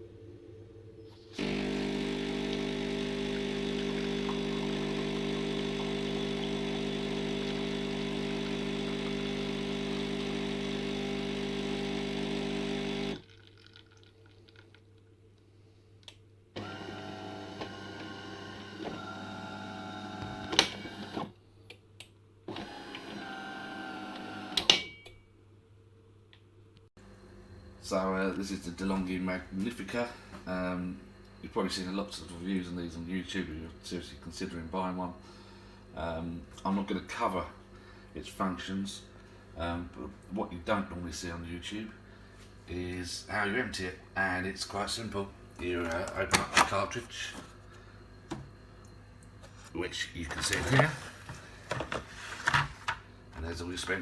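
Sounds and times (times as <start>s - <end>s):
coffee machine humming: 1.3s - 13.3s, 16.6s - 21.3s, 22.5s - 24.7s, 32.9s - 54.0s.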